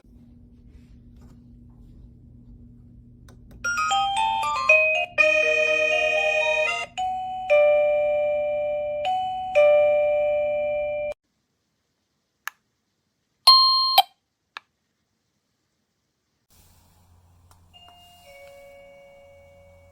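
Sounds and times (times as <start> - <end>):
doorbell electronic chime: 3.7 - 11.2, 13.5 - 14.1, 17.7 - 19.9
two-note chime: 17.7 - 19.9.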